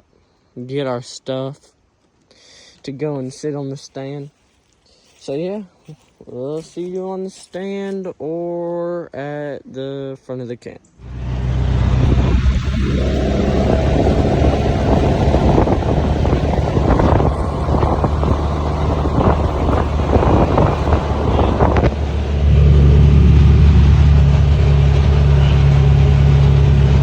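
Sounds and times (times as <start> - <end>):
off-road vehicle engine running: 11.0 - 27.0
wind on microphone: 11.6 - 24.8.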